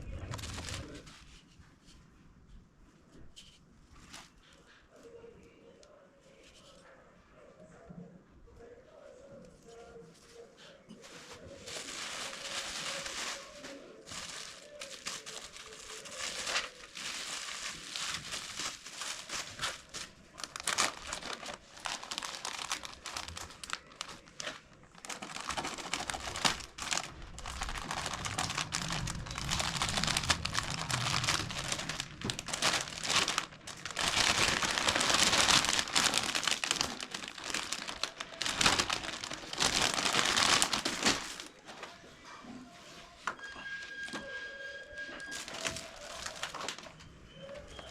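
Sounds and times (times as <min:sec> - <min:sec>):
plastic packaging crinkling: 0:00.0 - 0:01.4, 0:11.0 - 0:41.8, 0:45.0 - 0:47.9.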